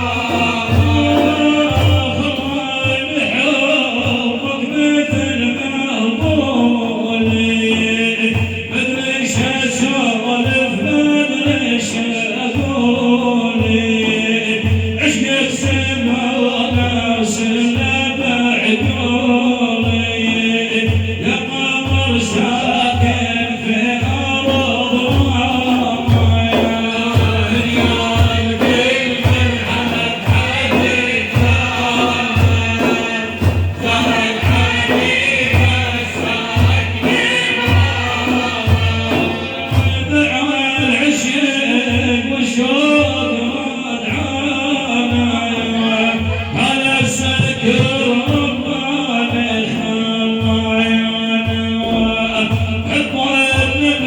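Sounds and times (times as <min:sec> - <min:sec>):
male voices singing: 0:00.0 - 0:54.0
steady low drum beat: 0:00.0 - 0:54.0.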